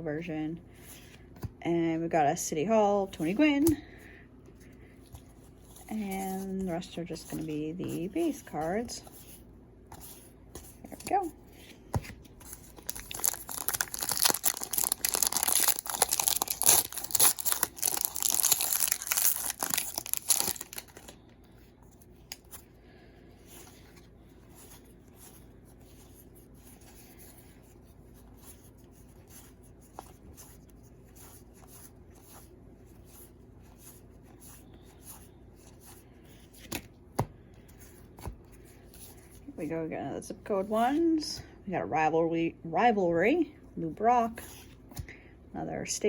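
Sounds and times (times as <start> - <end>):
wrapper tearing and crinkling: 12.6 - 21.1.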